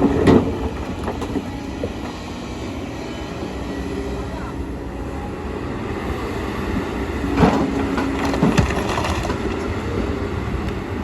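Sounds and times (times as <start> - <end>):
excavator diesel engine running: 0.0 - 11.0
bucket scraping stones: 7.4 - 9.6.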